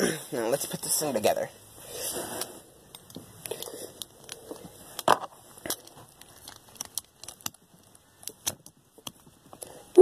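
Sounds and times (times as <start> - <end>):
plastic parts clicking and tapping: 4.6 - 9.7.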